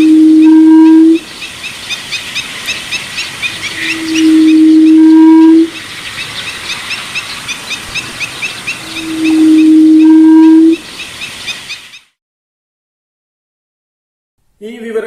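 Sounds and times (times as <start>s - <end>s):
bird low steady hoot: 0.0s - 10.9s
rapid high chirping: 1.3s - 4.9s.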